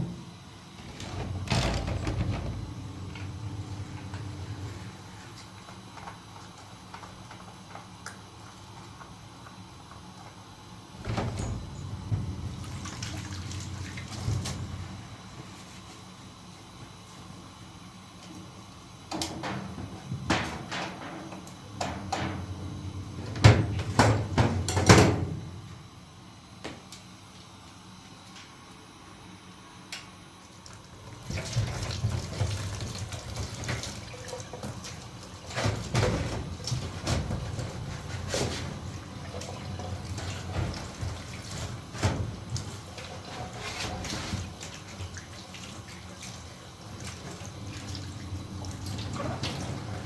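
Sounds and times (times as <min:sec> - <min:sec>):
tap water running: 0:00.8 - 0:15.4, 0:30.7 - 0:50.0.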